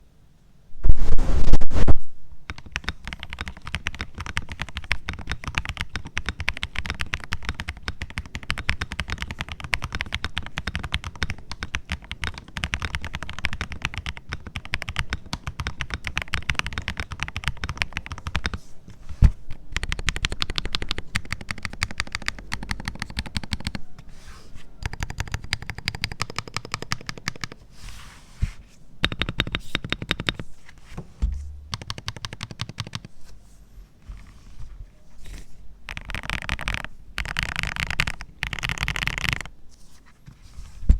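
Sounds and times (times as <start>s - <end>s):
mechanical keyboard typing: 2.4s - 18.6s, 19.5s - 23.9s, 24.8s - 27.6s, 29.0s - 30.4s, 31.7s - 33.1s, 35.9s - 39.5s.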